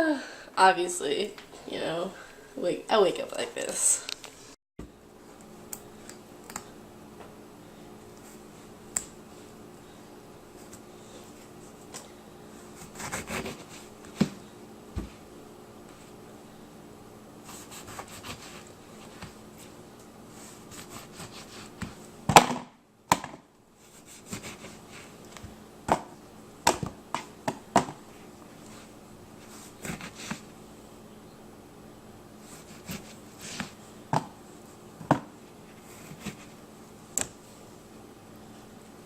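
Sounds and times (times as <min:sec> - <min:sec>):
faint steady hum: 0:00.0 - 0:39.0.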